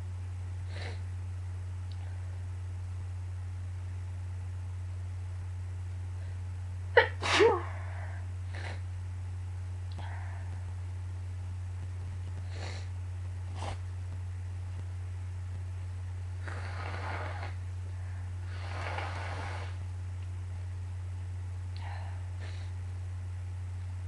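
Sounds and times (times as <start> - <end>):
steady low hum: 0.0 - 24.0
person sneezing: 7.0 - 8.0
faint breath: 10.0 - 10.7, 21.8 - 22.8
faint sniffs: 12.4 - 12.9, 18.5 - 19.8.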